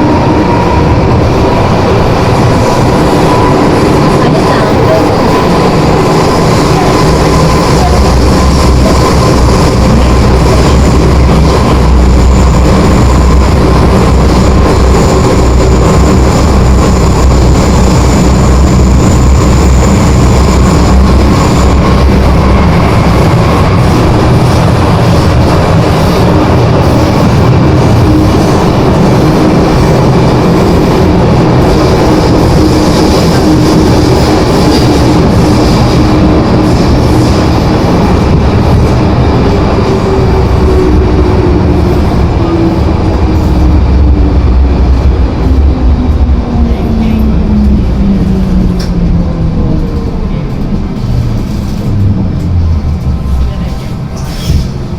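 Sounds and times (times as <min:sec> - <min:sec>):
train howling whine: 0:00.0 - 0:54.9
train running rumble: 0:00.0 - 0:54.9.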